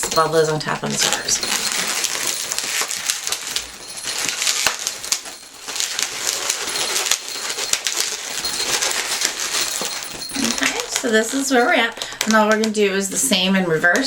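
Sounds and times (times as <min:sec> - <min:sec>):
balloons squeaking and rubbing: 0:00.0 - 0:12.5.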